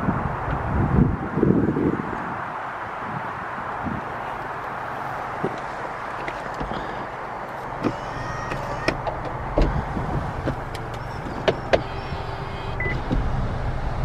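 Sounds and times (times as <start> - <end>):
roof mechanism clicks and clunks: 5.4 - 14.0
electric motor whine: 9.7 - 14.0.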